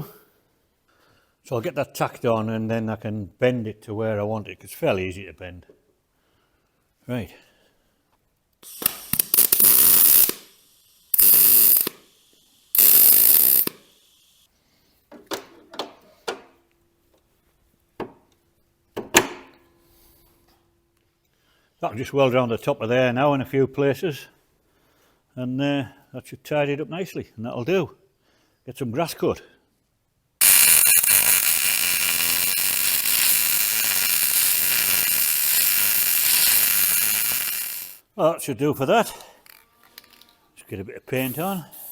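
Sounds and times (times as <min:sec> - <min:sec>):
welding sizzling crackle: 0:08.6 - 0:14.5, 0:30.4 - 0:38.0.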